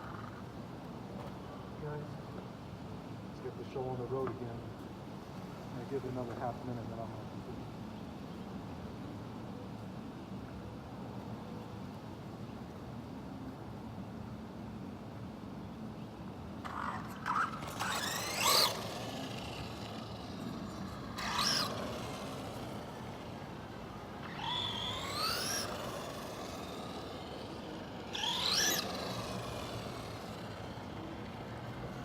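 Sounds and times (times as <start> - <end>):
electric motor whining up: 16.6 - 32.0.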